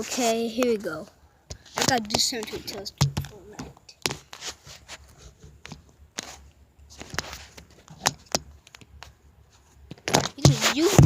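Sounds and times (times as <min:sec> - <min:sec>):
quiet rustling: 0:00.0 - 0:11.0
irregular knocks: 0:02.9 - 0:03.8.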